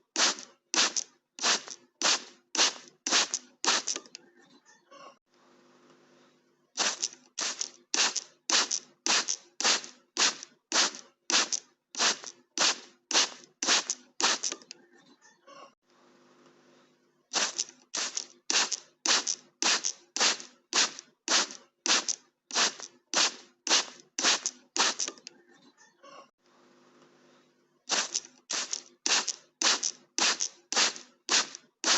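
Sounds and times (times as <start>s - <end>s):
spray bottle squirting: 0.0s - 4.1s, 6.8s - 14.6s, 17.3s - 25.2s, 27.9s - 31.9s.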